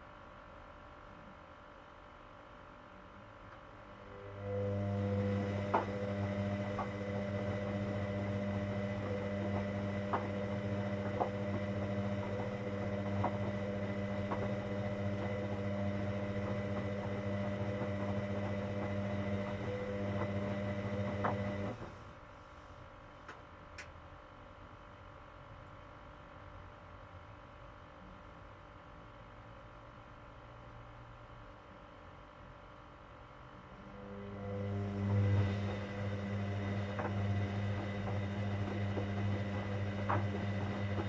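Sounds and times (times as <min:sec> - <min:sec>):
washing machine drain pump humming: 0:04.0 - 0:22.3, 0:33.7 - 0:41.0.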